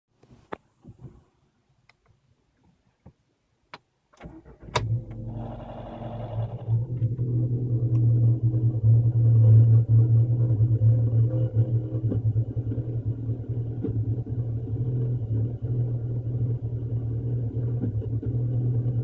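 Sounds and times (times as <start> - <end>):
car engine cranking and starting: 4.2 - 19.0
car engine idling: 4.3 - 19.0.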